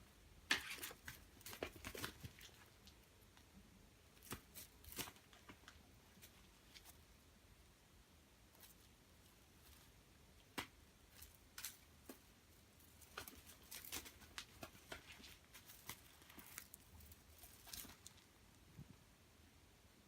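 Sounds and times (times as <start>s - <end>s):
cat claws scratching and tapping: 11.1s - 18.3s.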